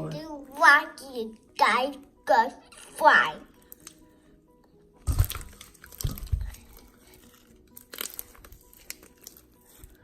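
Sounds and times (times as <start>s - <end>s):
slime being kneaded by hand: 5.0s - 10.0s.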